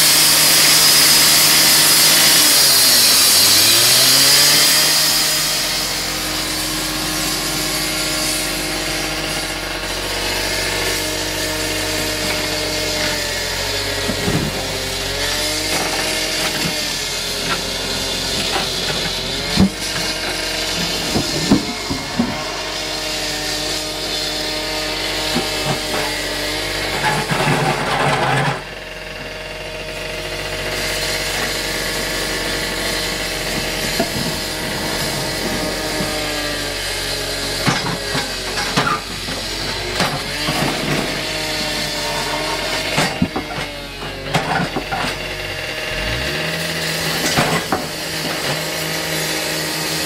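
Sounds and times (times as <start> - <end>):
diesel engine under load: 0.0 - 50.0
concrete knocks and scrapes: 14.0 - 14.7, 18.3 - 22.6, 37.6 - 41.2, 47.1 - 48.7.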